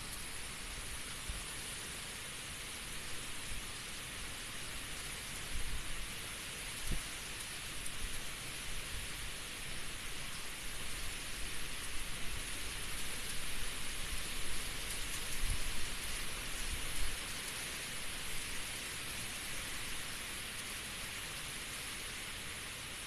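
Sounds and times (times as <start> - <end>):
heavy rain pouring: 0.0 - 23.0
wind rumble on microphone: 13.9 - 17.2.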